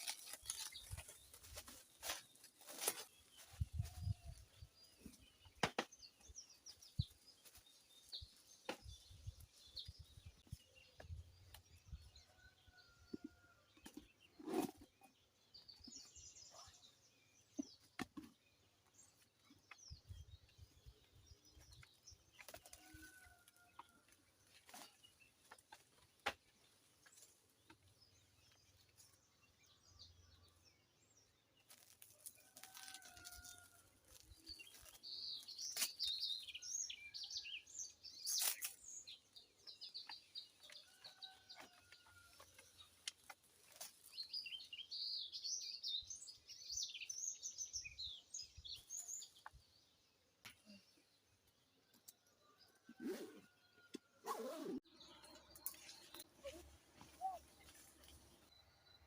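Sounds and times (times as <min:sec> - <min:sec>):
bird chirping: 0:34.2 - 0:43.4, 0:44.0 - 0:53.6.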